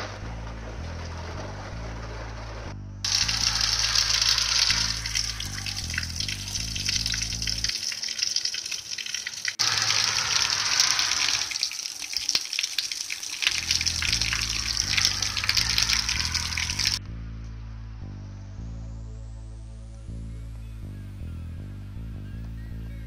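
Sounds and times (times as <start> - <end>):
loud water-like hiss: 3.1 - 6.9, 9.2 - 17.0.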